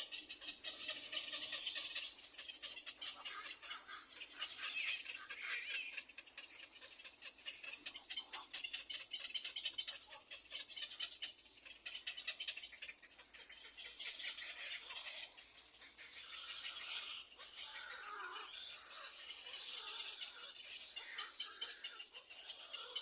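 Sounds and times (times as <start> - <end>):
bird chicks begging calls: 0.0 - 23.0.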